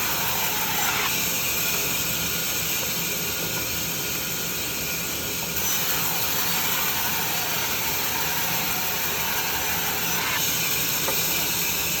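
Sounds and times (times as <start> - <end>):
band saw cutting wood: 0.0 - 1.3, 5.6 - 11.2.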